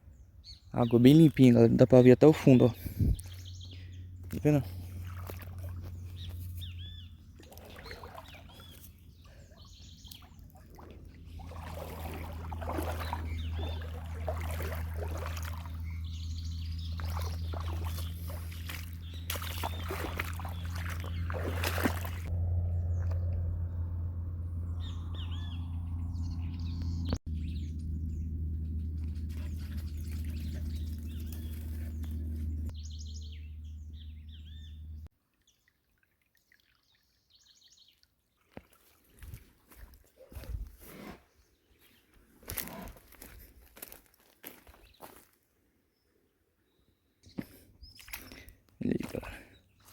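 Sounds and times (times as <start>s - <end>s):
small birds chirping: 0.0s - 23.3s, 24.7s - 35.6s, 44.6s - 45.4s, 46.0s - 49.9s
steady low hum: 10.4s - 35.1s.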